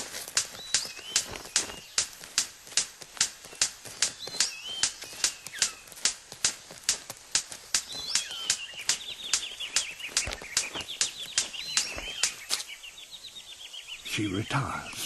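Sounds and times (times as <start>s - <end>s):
bird sharp clicks: 0.0s - 12.9s
bird whistled notes: 4.1s - 5.9s, 7.8s - 12.7s.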